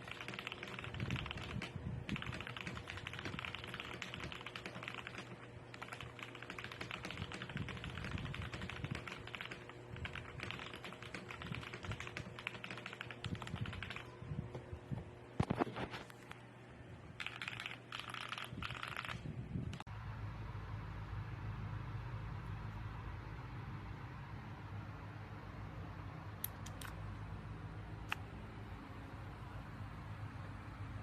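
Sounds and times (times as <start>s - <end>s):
fast mechanical keyboard typing: 0.0s - 14.1s, 17.2s - 19.8s.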